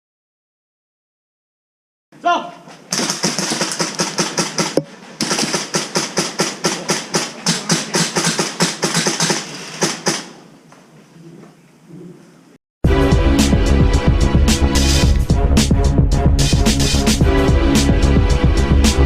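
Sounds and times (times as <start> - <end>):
airsoft gun firing bursts: 2.9 - 10.4.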